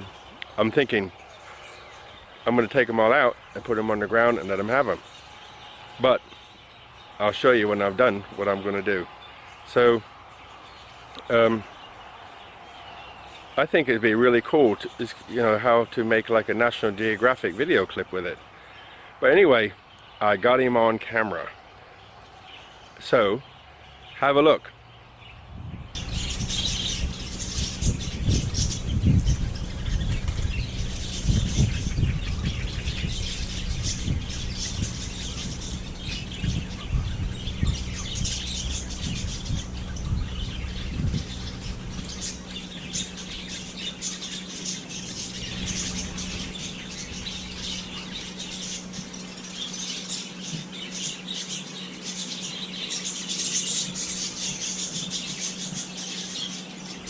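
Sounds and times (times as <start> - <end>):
small birds chirping and squawking: 0.0 - 57.0
steady low hum: 25.0 - 57.0.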